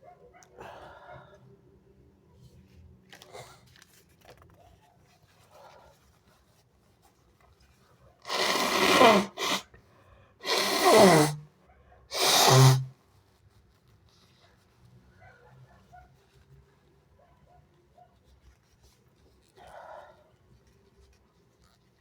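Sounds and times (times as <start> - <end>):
person sneezing: 8.3 - 9.7, 10.4 - 11.4, 12.1 - 12.9.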